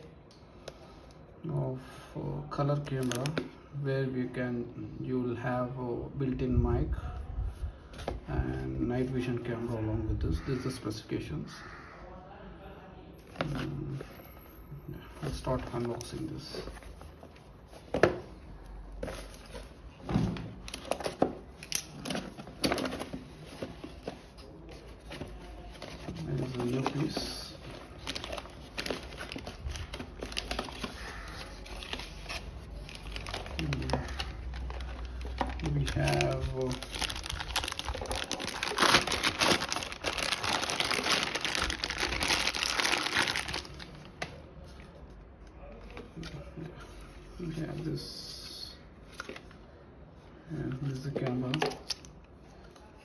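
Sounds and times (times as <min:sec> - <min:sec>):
box packaging being handled: 0:13.2 - 0:47.6.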